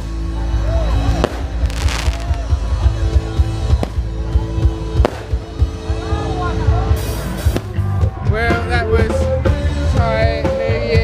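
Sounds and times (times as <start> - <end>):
steady music: 1.0 - 10.2
fireworks banging: 1.1 - 2.8, 3.6 - 4.2, 5.0 - 5.8
firework hissing burst: 1.2 - 2.4.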